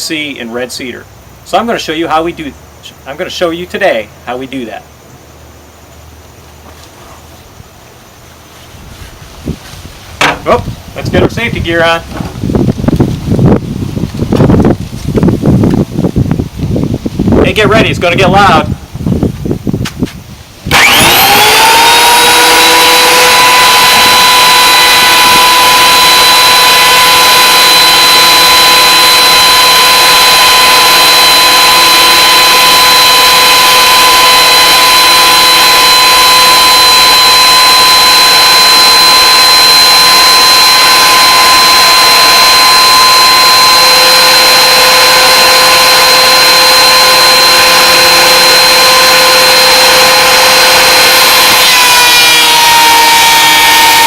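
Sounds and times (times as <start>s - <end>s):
electric planer motor whine: 20.7s - 54.0s.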